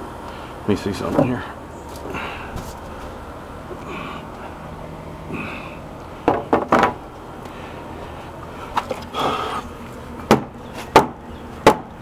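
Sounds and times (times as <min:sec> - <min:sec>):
knocks on wooden deck framing: 0:06.2 - 0:07.0, 0:10.3 - 0:11.9.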